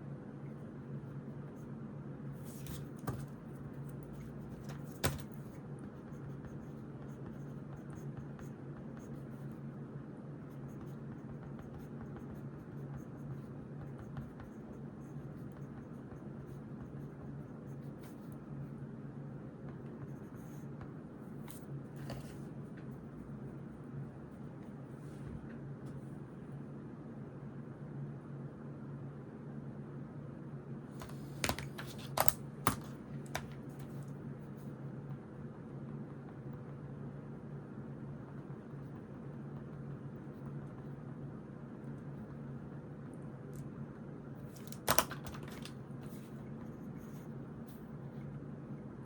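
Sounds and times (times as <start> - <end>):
pen scratching on paper: 2.4 - 9.6, 10.4 - 18.4, 20.0 - 20.8.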